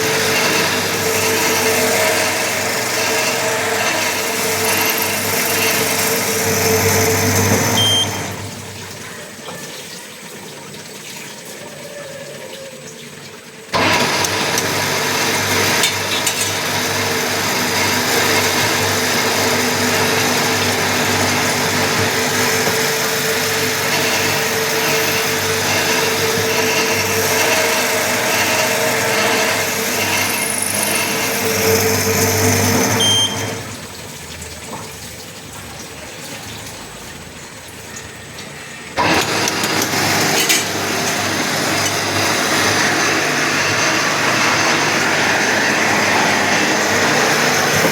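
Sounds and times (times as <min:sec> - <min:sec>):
drilling machine humming: 0:00.0 - 0:09.0, 0:13.7 - 0:34.0, 0:38.7 - 0:47.9.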